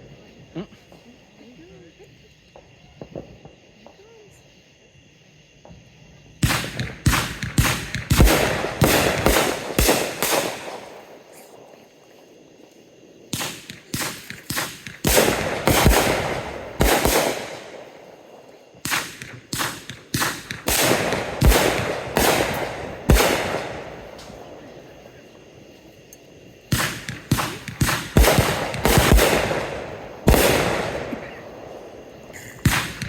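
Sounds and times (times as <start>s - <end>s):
fireworks bangs echoing: 6.4s - 12.3s, 13.2s - 25.5s, 26.6s - 33.0s.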